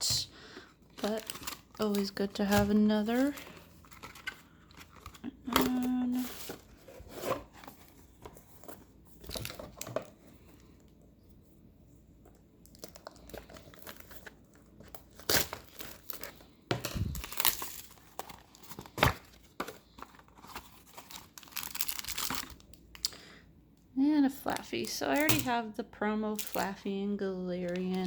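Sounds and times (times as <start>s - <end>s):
packaging crinkling and rustling: 0.6s - 10.8s, 12.2s - 23.2s, 26.3s - 26.8s.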